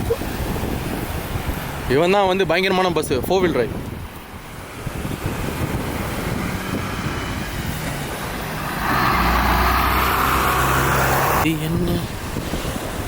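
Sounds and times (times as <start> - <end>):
bus engine humming: 4.2 - 11.5.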